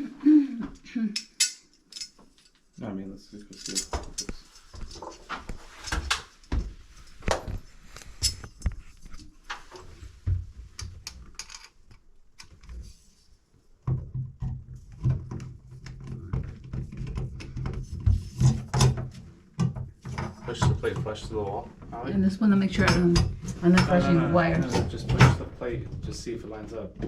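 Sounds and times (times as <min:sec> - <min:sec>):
knocks and clinks of tools: 0:01.2 - 0:02.6, 0:03.5 - 0:05.1.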